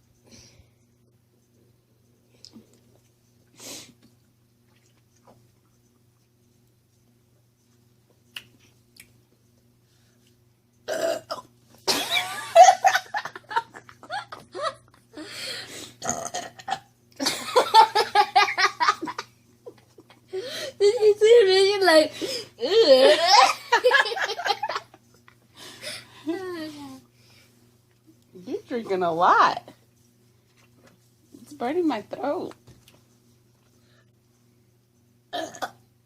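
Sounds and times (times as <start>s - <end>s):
person burping loudly: 10.9s - 11.4s, 16.0s - 16.8s, 35.3s - 35.8s.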